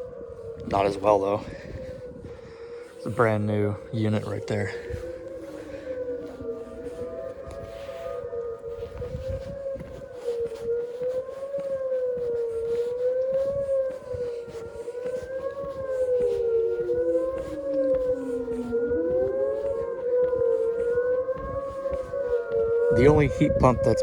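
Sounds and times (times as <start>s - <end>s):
lower siren tone sliding: 0.0s - 24.0s
wavering warning siren: 0.0s - 24.0s.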